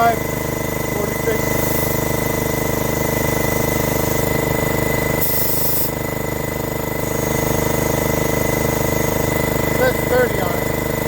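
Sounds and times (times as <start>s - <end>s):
air compressor running: 0.0s - 11.0s
hissing air burst: 1.5s - 2.0s, 5.2s - 6.0s.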